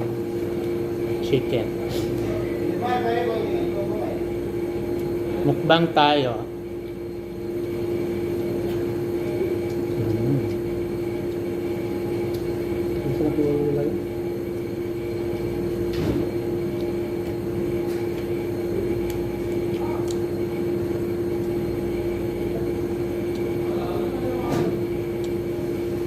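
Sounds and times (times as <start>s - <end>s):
mechanical droning hum: 0.0s - 26.0s.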